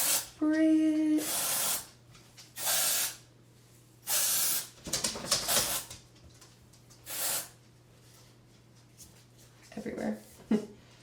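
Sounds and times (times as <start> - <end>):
aerosol spray hissing: 1.2 - 1.9, 2.6 - 3.2, 4.1 - 4.7, 7.1 - 7.5.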